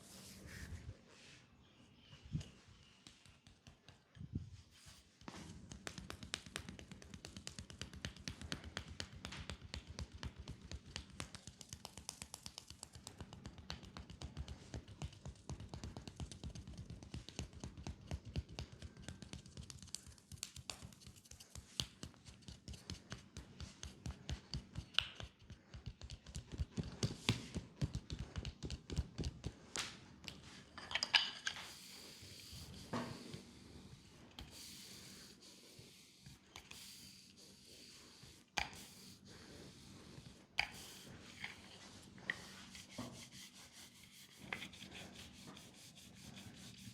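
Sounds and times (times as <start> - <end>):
hands tapping on a leg: 2.9 - 4.3, 5.2 - 30.4.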